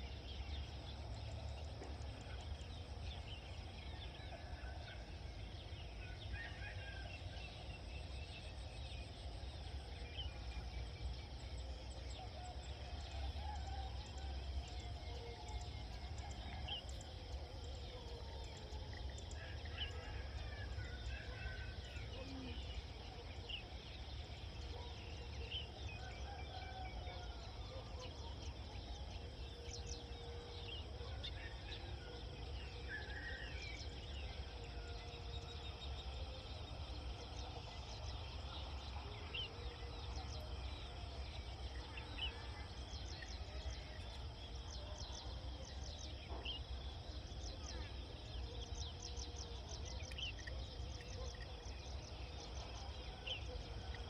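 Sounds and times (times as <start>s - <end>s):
insect drone: 0.0s - 27.7s.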